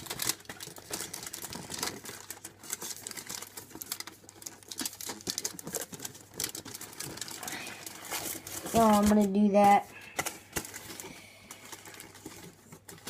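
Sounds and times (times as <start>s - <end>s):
aluminium foil crinkling: 0.0s - 13.0s.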